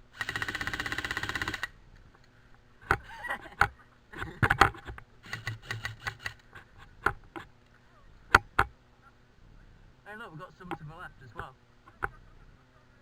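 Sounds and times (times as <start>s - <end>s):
airsoft gun clicks and knocks: 4.4s - 7.5s.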